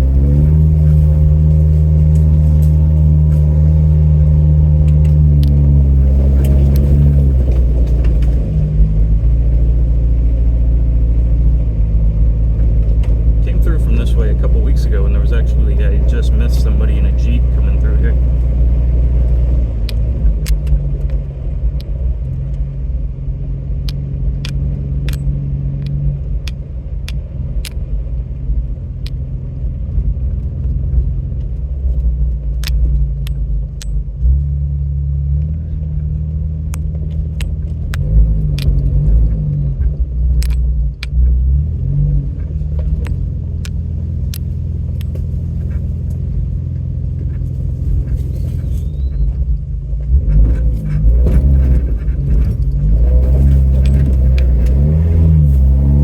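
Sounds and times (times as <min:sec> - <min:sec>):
off-road vehicle engine: 0:00.0 - 0:56.0
sharp clicks and knocks: 0:04.8 - 0:09.0, 0:19.3 - 0:22.6, 0:30.3 - 0:34.5, 0:35.4 - 0:56.0.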